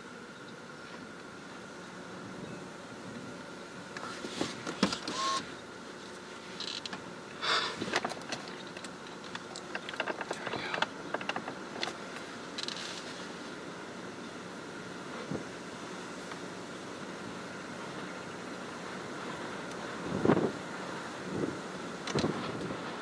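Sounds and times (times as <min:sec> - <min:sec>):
steady background hum: 0:00.0 - 0:23.0
handling noise knocks and clicks: 0:07.8 - 0:13.0.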